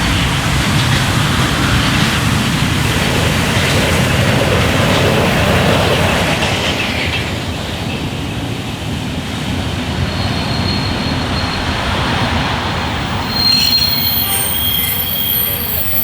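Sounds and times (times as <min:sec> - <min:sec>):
train rumbling on rails: 0:00.0 - 0:16.0
train wheels squealing: 0:00.0 - 0:16.0.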